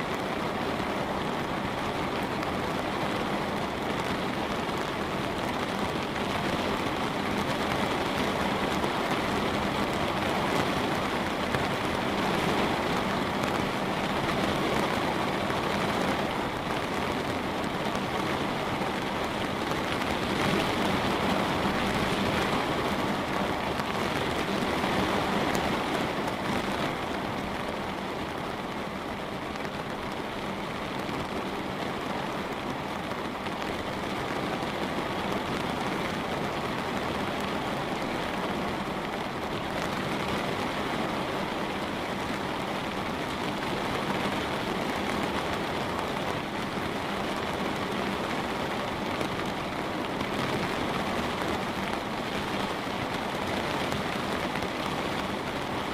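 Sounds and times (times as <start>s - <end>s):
light rain on a window: 0.0s - 55.9s.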